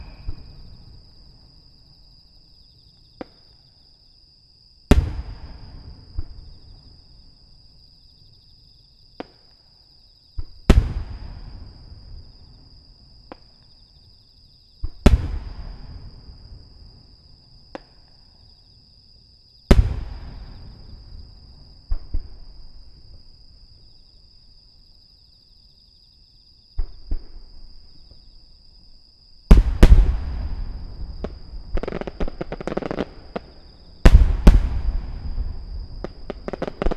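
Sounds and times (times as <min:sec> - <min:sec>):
firework booms with rumbling echo: 0:00.0 - 0:01.6, 0:04.9 - 0:07.2, 0:10.4 - 0:12.7, 0:14.8 - 0:17.1, 0:19.7 - 0:23.1, 0:29.5 - 0:36.9
firework cracks: 0:29.5 - 0:36.9.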